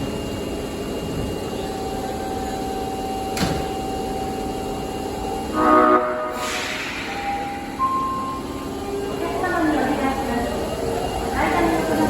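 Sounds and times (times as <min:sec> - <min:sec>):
subway train running hum: 0:00.0 - 0:12.0
train horn blast: 0:05.5 - 0:06.8.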